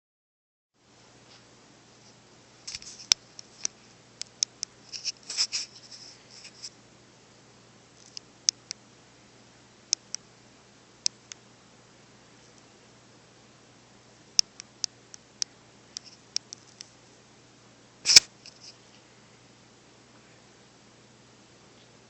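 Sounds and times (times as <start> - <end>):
cat claws clicking and scraping: 2.7 - 6.7.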